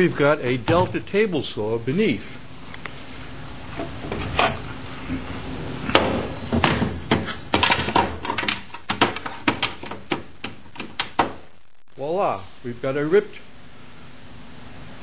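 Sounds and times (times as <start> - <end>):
knocks and clatter of parts: 5.9 - 11.4.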